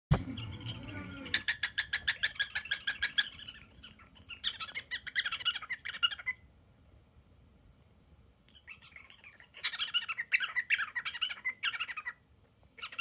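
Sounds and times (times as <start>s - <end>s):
cockatiel chirping: 0.1s - 6.5s, 8.5s - 12.2s, 12.8s - 13.0s
cockatiel squeaking: 0.3s - 6.4s, 8.5s - 12.2s, 12.8s - 13.0s.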